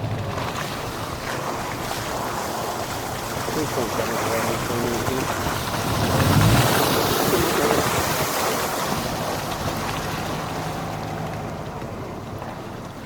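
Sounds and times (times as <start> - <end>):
tyre noise on dirt road: 0.0 - 13.0
slush and water hissing: 0.4 - 11.2
low rumble: 4.5 - 13.0.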